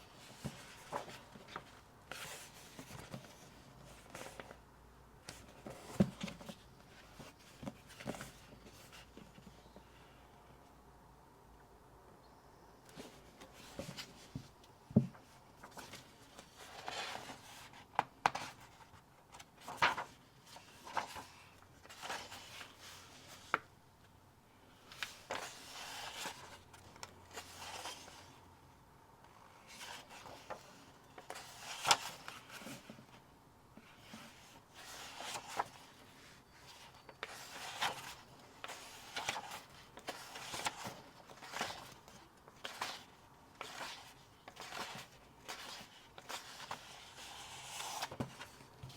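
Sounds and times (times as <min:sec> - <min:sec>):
paper and card rustling: 0:15.0 - 0:23.6, 0:33.8 - 0:48.9.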